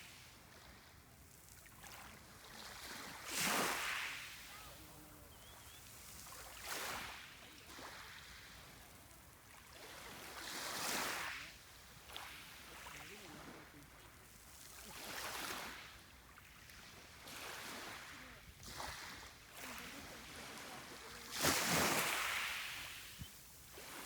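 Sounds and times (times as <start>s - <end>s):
sea waves washing in: 17.5s - 24.0s.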